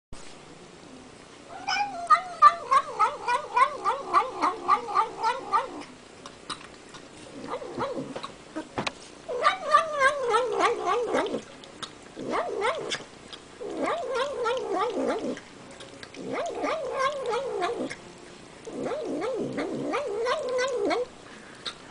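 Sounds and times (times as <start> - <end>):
cat making wavering meow calls: 1.6 - 5.8, 18.9 - 21.1.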